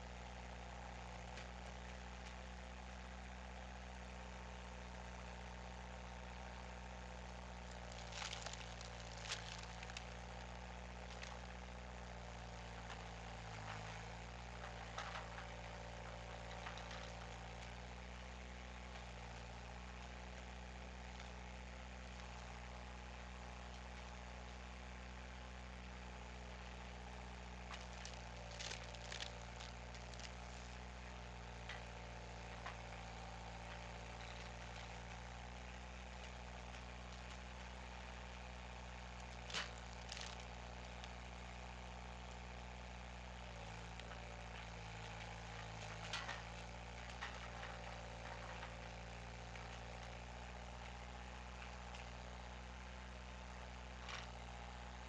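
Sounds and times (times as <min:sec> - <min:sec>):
skid steer engine running: 0:00.0 - 0:55.0.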